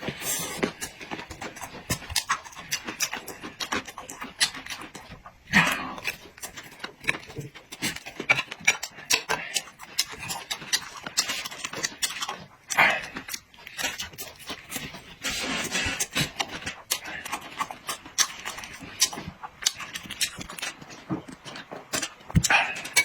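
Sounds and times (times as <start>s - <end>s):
wet chewing with mouth clicks: 0.0s - 23.0s.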